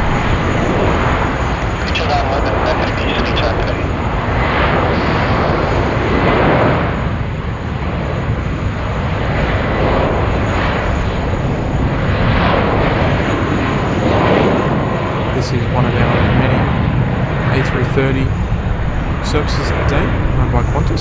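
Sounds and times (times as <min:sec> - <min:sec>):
jet airliner engines roaring: 0:00.0 - 0:21.0.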